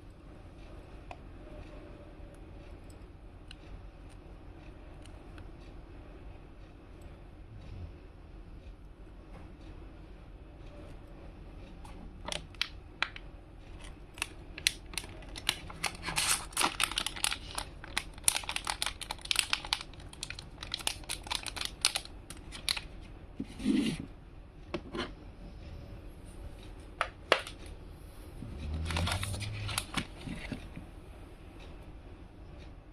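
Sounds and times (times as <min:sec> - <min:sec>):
packaging crinkling: 0:13.8 - 0:22.9, 0:28.7 - 0:30.7.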